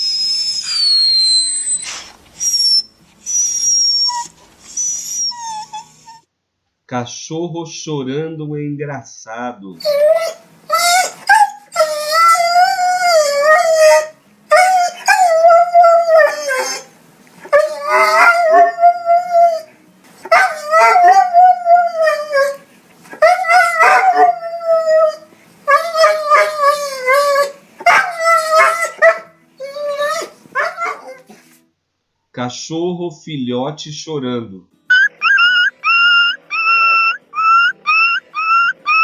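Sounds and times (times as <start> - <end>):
dog howling and crying: 9.8 - 31.4, 34.9 - 39.0.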